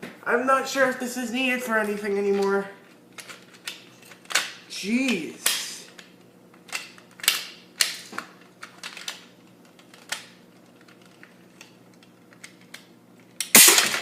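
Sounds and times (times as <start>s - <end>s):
loud spring snap: 13.4s - 14.0s.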